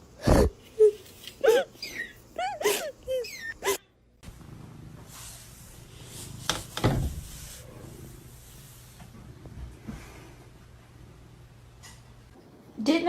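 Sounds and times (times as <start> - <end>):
background hiss: 0.5 - 13.0
pet squeaky cries: 1.6 - 3.8.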